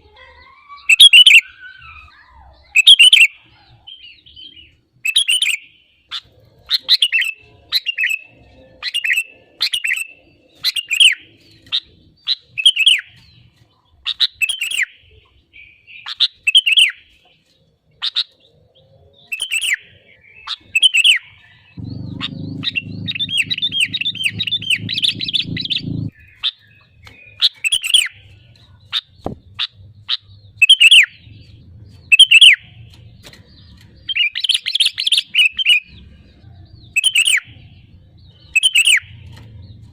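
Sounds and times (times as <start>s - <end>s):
low hum: 21.8s - 26.1s
bulbul calling: 21.8s - 28.1s, 28.9s - 36.0s, 36.8s - 39.8s.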